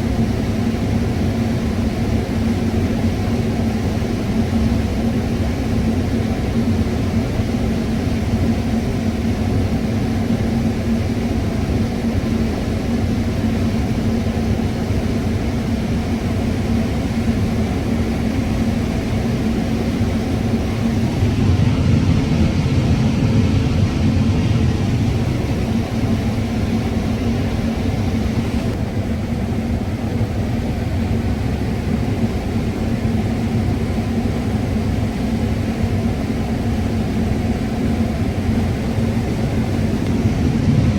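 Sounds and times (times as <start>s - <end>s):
combine harvester droning: 16.4s - 28.8s, 36.7s - 40.9s.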